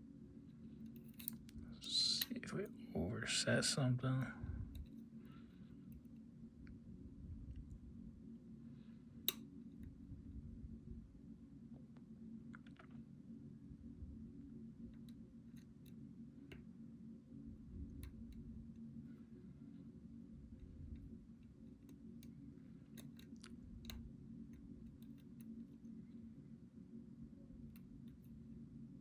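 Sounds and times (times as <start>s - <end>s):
steady low hum: 0.0s - 29.0s
lock pick clicking pins: 0.8s - 1.5s, 23.0s - 25.6s.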